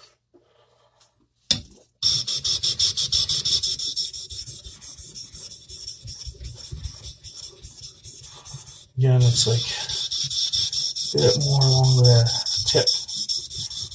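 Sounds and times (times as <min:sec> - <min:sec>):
knife rasping on sharpening stone: 0:02.1 - 0:13.9.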